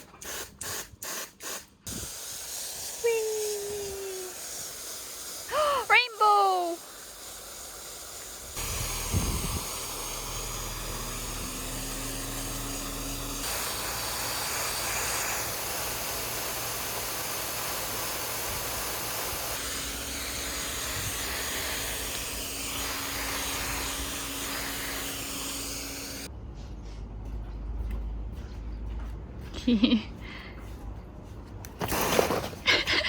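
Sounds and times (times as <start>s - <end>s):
water spraying in hissing jet: 0.0s - 26.3s.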